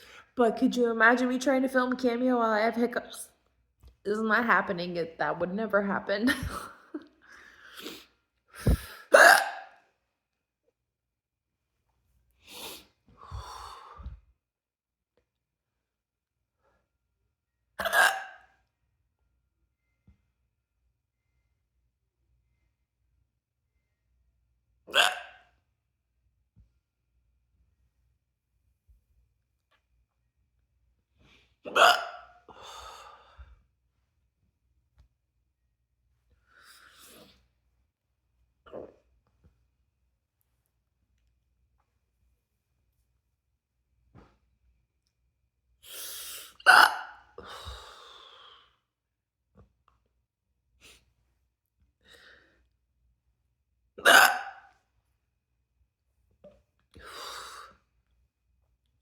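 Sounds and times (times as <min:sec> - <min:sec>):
person hiccuping: 0:08.7 - 0:09.7, 0:17.8 - 0:18.4, 0:24.9 - 0:25.2, 0:31.7 - 0:32.2, 0:46.6 - 0:47.2, 0:54.0 - 0:54.6.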